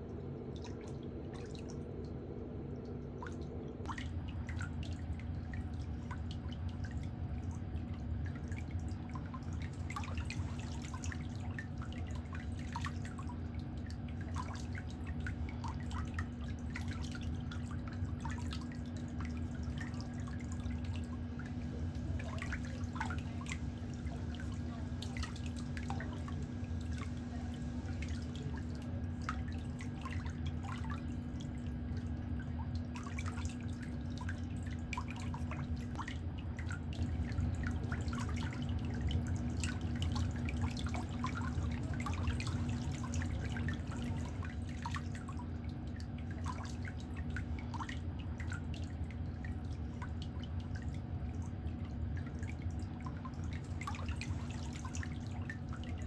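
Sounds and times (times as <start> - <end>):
steady low hum: 0.0 - 56.0
water dripping: 0.0 - 56.0.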